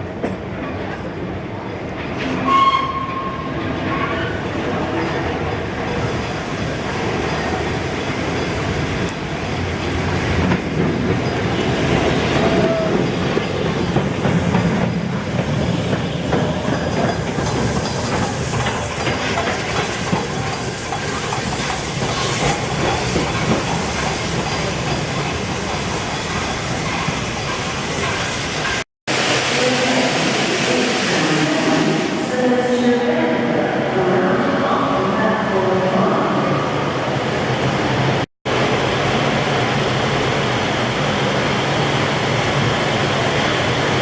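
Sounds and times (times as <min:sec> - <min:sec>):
train rumble: 0:00.0 - 0:44.0
train wheels clicking over rail joints: 0:09.0 - 0:28.8.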